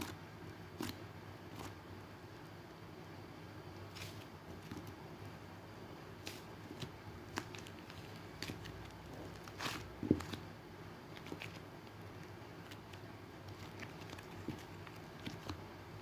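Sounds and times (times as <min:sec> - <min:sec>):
hands squishing slime: 0:00.0 - 0:01.8, 0:03.9 - 0:05.0, 0:06.1 - 0:16.0.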